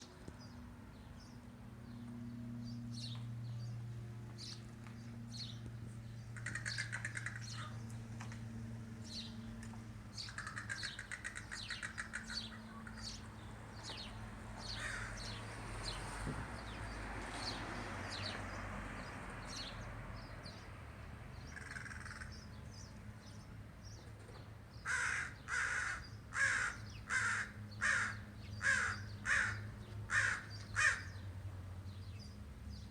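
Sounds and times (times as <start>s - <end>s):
crow cawing: 6.4s - 7.8s, 10.3s - 13.0s, 14.7s - 15.4s, 21.5s - 22.4s, 24.8s - 31.1s.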